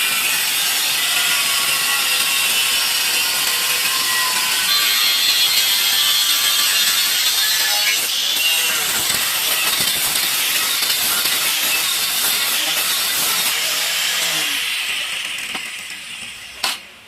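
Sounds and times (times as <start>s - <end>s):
electric tile saw cutting: 0.0s - 16.9s.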